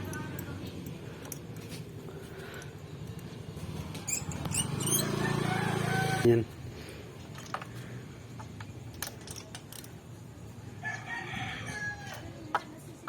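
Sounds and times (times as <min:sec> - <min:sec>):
rooster crowing: 0:04.9 - 0:06.3, 0:10.8 - 0:12.4.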